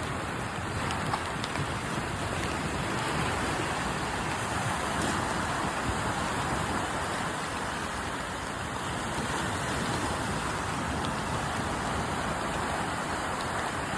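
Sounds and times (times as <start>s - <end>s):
rain falling: 0.0s - 13.9s
small waves washing in: 0.0s - 13.9s.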